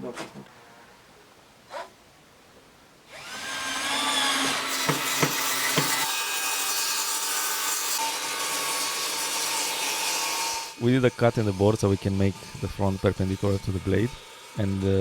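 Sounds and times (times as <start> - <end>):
saw blade cutting wood: 3.1 - 15.0
sharp knocks: 4.8 - 6.0.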